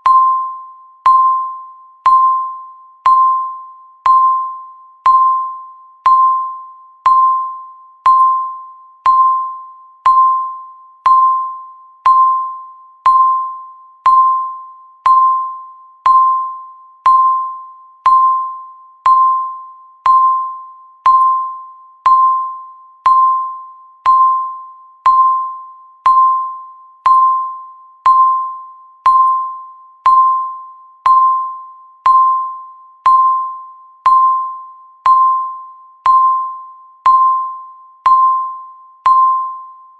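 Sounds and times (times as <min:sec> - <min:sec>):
bell-like ding: 0:00.0 - 0:39.9.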